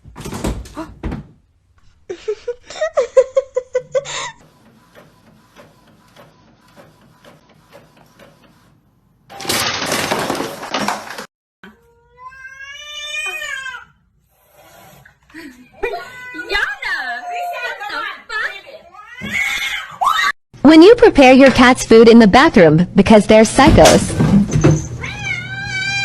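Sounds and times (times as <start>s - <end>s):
cat meowing: 11.9s - 13.9s, 25.0s - 26.0s.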